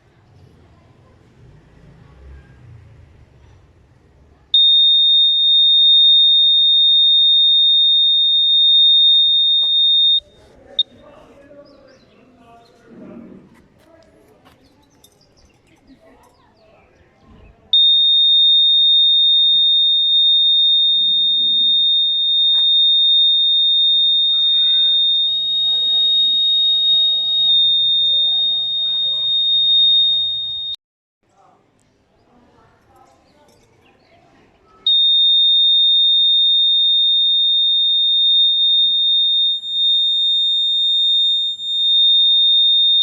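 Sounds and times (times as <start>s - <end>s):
alarm buzzer high-pitched tone: 4.6s - 10.2s, 17.8s - 30.8s, 34.9s - 43.0s.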